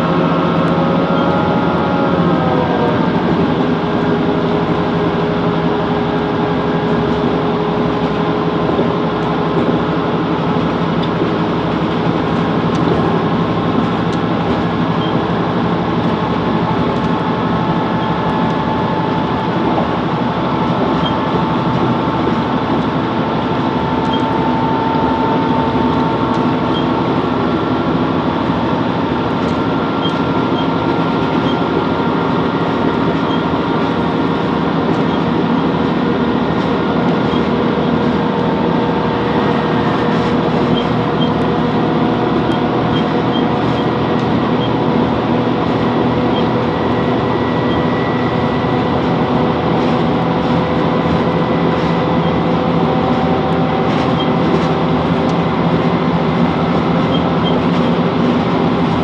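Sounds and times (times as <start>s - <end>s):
diesel engine hum: 0.0s - 59.0s
wheel-on-rail running noise: 0.0s - 59.0s.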